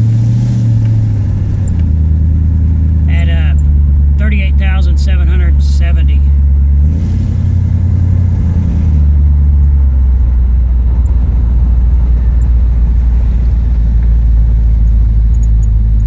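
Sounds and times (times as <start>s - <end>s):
car engine and road drone: 0.0s - 16.0s.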